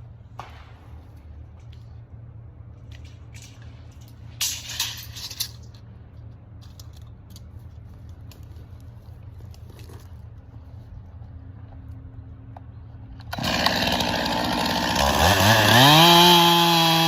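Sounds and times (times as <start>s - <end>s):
crunching and rattling: 2.9s - 10.8s.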